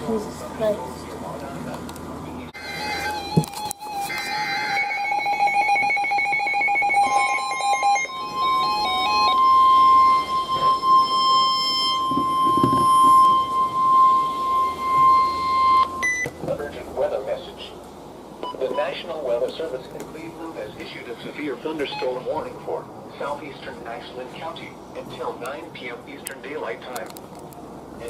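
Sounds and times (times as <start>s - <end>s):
steady high alarm tone: 2.6s - 16.4s, 21.8s - 22.4s
pulsing electronic alert beeps: 4.9s - 16.3s.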